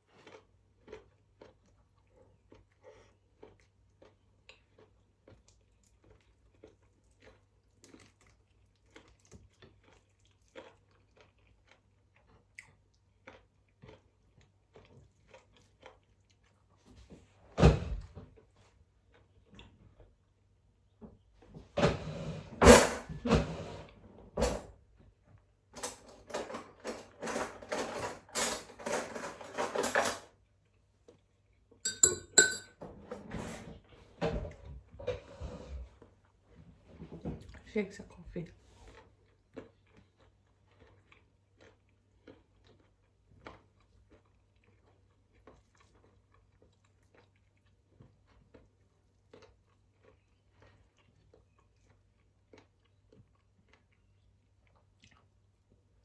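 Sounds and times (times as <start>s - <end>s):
cutlery clinking on dishes: 31.9s - 33.6s.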